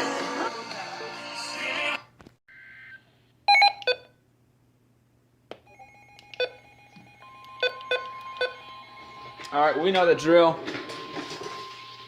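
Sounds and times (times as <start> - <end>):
sharp electronic beeps: 7.3 - 8.6.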